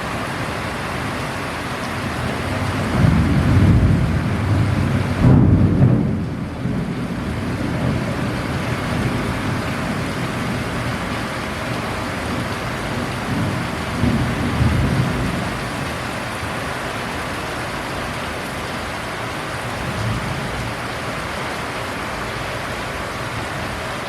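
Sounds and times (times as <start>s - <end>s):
heavy rain falling: 0.0s - 24.0s
thunder rolling: 2.4s - 15.9s.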